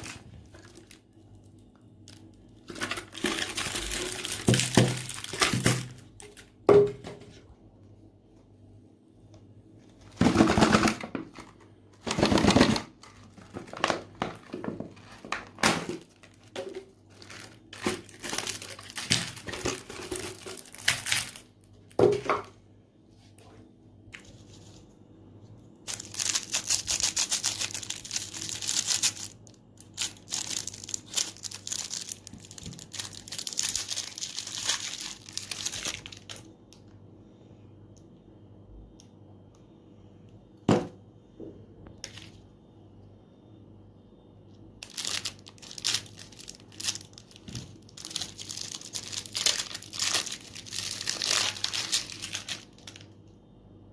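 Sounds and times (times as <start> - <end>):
crinkling and tearing: 0.0 - 6.6, 12.1 - 21.5, 25.9 - 36.5, 44.8 - 53.1.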